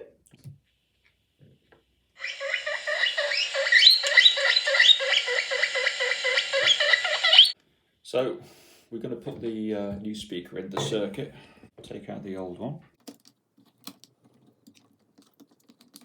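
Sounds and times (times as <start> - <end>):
guinea pig squeals through small speaker: 2.2 - 7.6.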